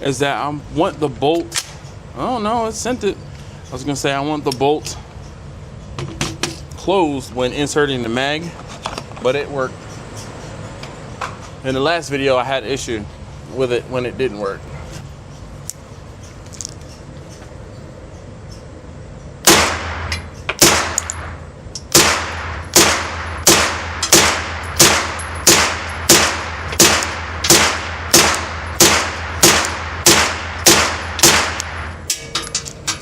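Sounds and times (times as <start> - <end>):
gunshots with ringing tail: 19.4 - 32.1.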